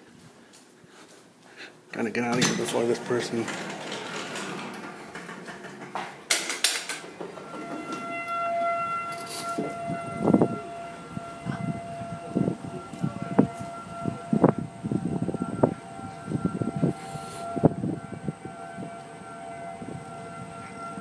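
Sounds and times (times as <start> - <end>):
warning siren steady tone: 7.0 - 21.0.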